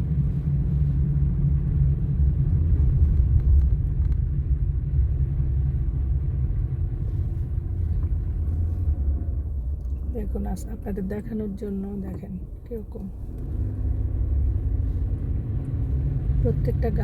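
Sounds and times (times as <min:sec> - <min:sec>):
car driving over snow: 0:13.2 - 0:17.0.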